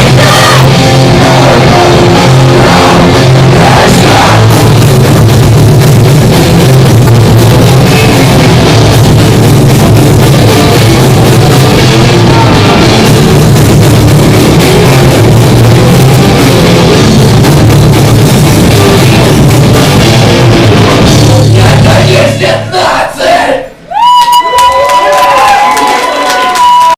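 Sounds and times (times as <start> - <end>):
shouted vocals: 0.0 - 4.6, 21.5 - 26.9
punk band playing live: 0.0 - 22.7.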